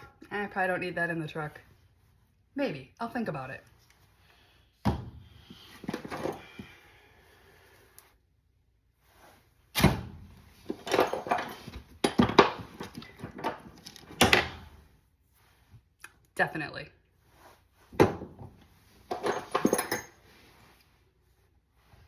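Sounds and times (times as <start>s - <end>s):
hand tools clattering: 10.7s - 14.1s, 19.1s - 20.2s.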